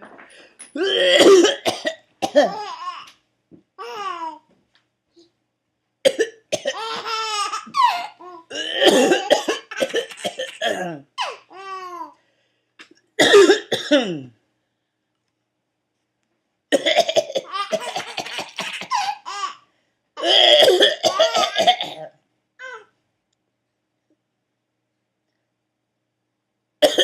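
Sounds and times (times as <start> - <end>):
man coughing: 0.8 - 2.7, 8.5 - 11.1, 13.2 - 14.3, 20.2 - 22.1
baby laughing: 2.4 - 3.1, 6.8 - 8.5, 17.4 - 19.6.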